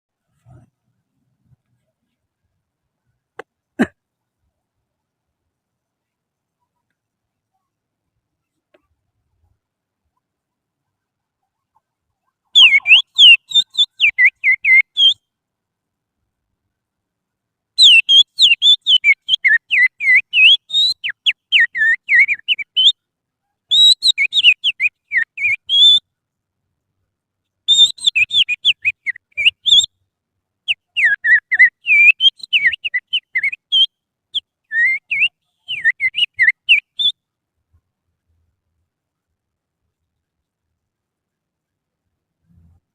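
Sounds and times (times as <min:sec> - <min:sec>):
person whistling bird chirps: 0:12.6 - 0:15.2, 0:23.7 - 0:26.0, 0:27.7 - 0:29.9, 0:30.7 - 0:33.9, 0:34.7 - 0:37.2.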